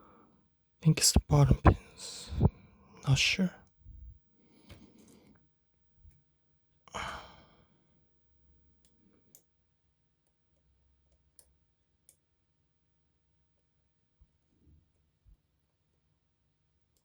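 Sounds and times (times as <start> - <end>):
person sighing: 6.9 - 7.5.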